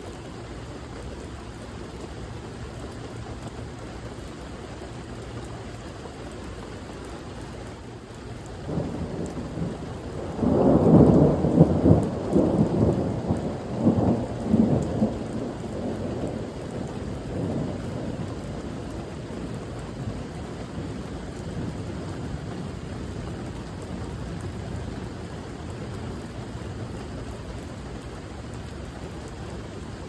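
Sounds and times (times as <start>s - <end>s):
steady rain: 0.0s - 30.0s
thunder rumbling: 8.6s - 27.6s.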